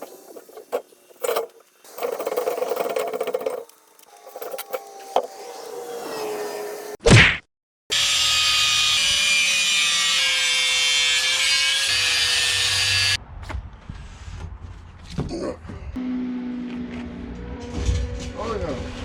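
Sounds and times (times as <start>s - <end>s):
power tool cutting metal: 0.0s - 7.0s, 7.9s - 13.2s.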